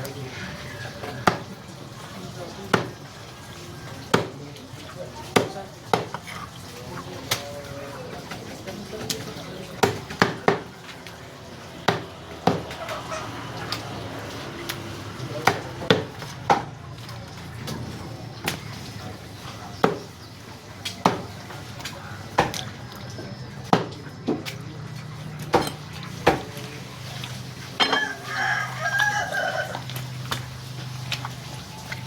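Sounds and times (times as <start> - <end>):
chicken calling: 0.2 - 1.6, 12.6 - 14.2, 27.8 - 30.2
cleaver chopping chicken: 0.7 - 1.7, 2.6 - 3.1, 3.9 - 7.5, 9.0 - 14.0, 14.6 - 17.0, 19.5 - 31.4.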